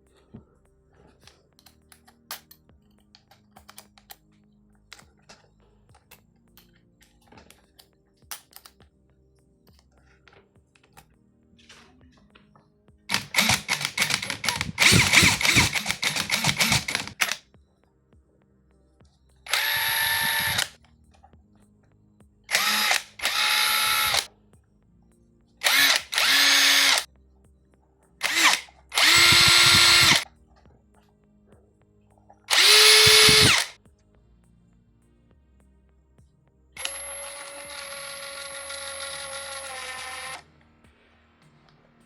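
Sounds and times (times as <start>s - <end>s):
impact driver hammering: 13.1s - 17.4s, 19.6s - 20.7s, 22.5s - 24.2s, 28.3s - 30.2s, 32.5s - 33.7s
impact driver motor whine: 13.1s - 17.4s, 19.5s - 20.7s, 22.5s - 24.3s, 25.6s - 27.1s, 28.2s - 30.2s, 32.5s - 33.7s, 36.8s - 40.4s.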